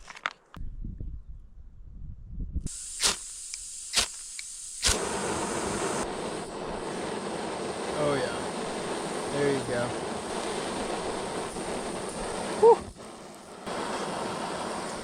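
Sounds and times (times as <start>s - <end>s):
igniter clicks: 2.7s - 6.1s
gas burner rushing hiss: 2.7s - 15.0s
gas hissing from valve: 2.7s - 15.0s.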